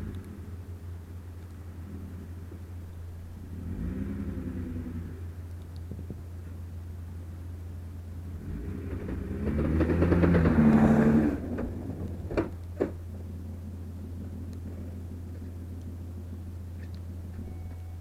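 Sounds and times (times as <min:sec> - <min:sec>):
low drivetrain hum: 0:00.0 - 0:18.0
rising crunching noise: 0:08.9 - 0:12.6.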